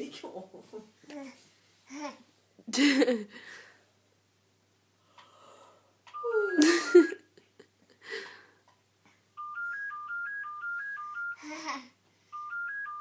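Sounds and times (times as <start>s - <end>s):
electronic beeping tune: 6.2s - 7.2s, 9.4s - 11.4s, 12.4s - 13.0s.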